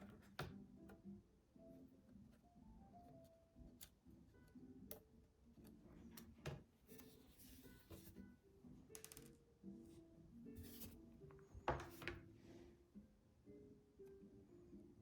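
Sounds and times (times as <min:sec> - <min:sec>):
soft background music: 0:00.0 - 0:15.0.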